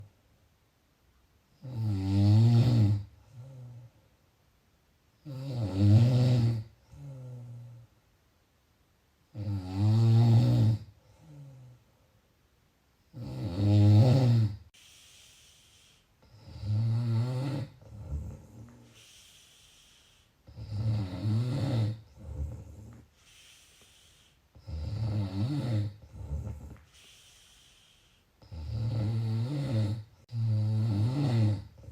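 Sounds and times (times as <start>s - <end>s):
person snoring: 1.6s - 3.9s, 5.2s - 7.9s, 9.3s - 11.8s, 13.1s - 31.9s
faint breath: 14.7s - 16.4s, 17.9s - 20.6s, 22.0s - 24.7s, 26.0s - 28.5s.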